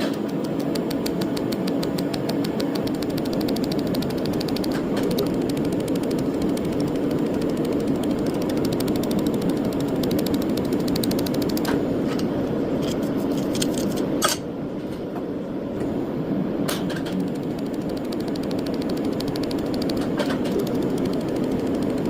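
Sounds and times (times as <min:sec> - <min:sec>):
rapid sharp ticks: 0:00.0 - 0:11.8, 0:17.1 - 0:22.0
laser welder humming: 0:00.0 - 0:13.7, 0:16.8 - 0:22.0.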